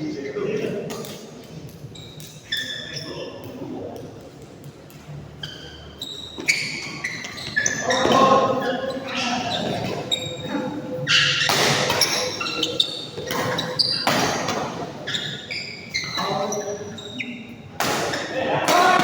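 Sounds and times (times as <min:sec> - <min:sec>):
sneakers squeaking on court: 0:01.9 - 0:03.2, 0:04.9 - 0:18.3
players' voices: 0:07.5 - 0:19.0
racket hitting shuttlecock: 0:11.4 - 0:12.3.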